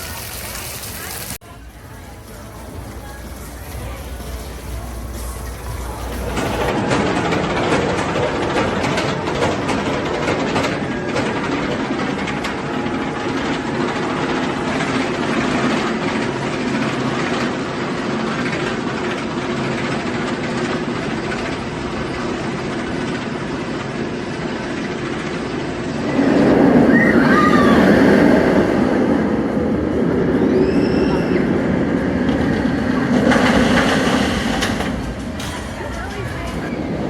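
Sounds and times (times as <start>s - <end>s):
ride train wheels rattling: 0.0s - 37.0s
rising and falling high sounds: 26.0s - 32.5s.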